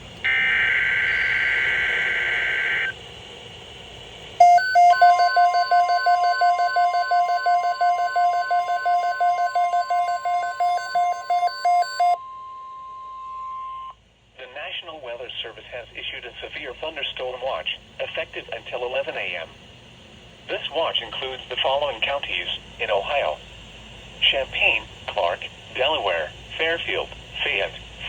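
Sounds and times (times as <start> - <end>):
steady warning alarm tone: 0.2 - 3.0, 4.4 - 14.0
rapid electronic beeping: 4.4 - 12.2.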